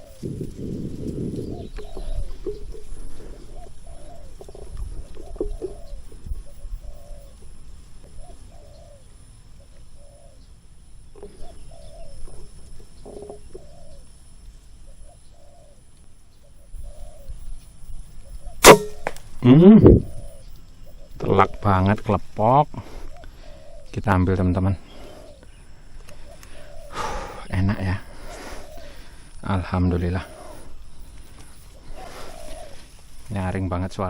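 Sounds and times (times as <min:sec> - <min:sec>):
dove cooing: 0:00.0 - 0:10.5, 0:11.1 - 0:17.6, 0:19.4 - 0:33.3
air rifle crack: 0:18.6 - 0:19.4.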